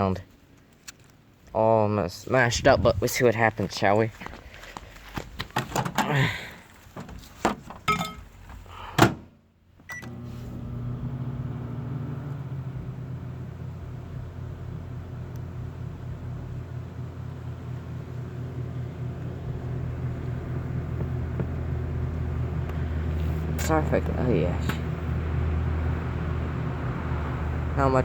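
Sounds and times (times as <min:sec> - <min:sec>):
microwave oven humming: 0:09.9 - 0:27.8.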